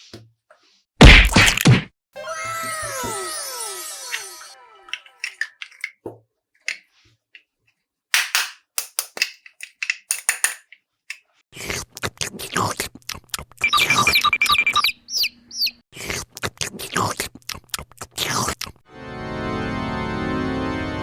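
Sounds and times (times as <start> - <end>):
plastic toy pieces clicking: 4.9 - 6.0, 8.2 - 11.3
rapid electronic beeps: 13.6 - 15.0.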